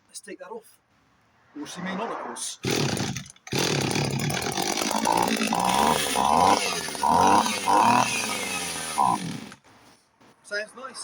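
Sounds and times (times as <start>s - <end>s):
chainsaw revving: 2.6s - 9.6s.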